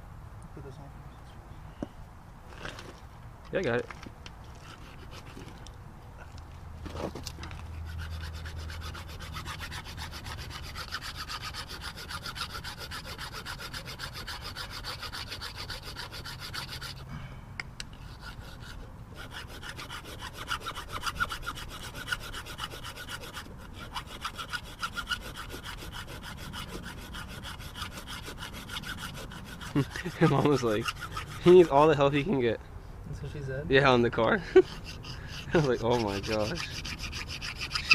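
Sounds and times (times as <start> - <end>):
metal grinding: 4.4 - 5.6, 6.8 - 17.1, 17.9 - 32.3, 34.5 - 37.9.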